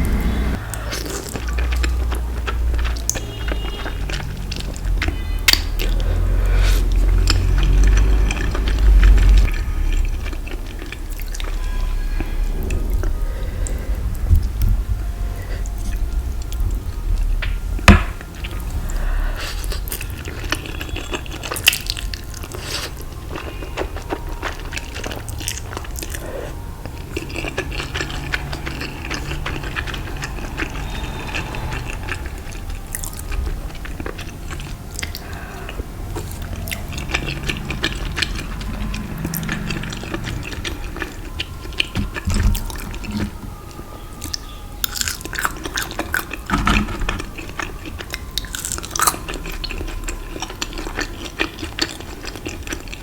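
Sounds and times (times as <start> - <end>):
close chewing with crackles: 0.0 - 53.0.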